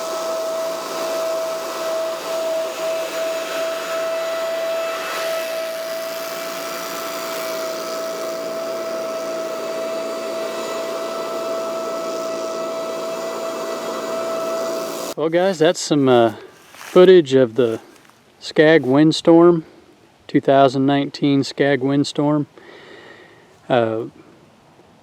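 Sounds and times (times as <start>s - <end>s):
leaf blower running: 0.0s - 18.0s.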